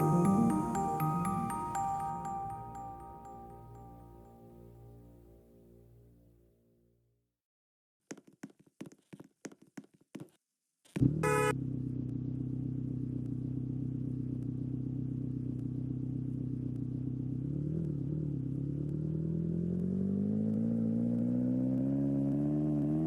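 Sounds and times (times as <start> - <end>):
vehicle engine running: 11.0 - 20.0.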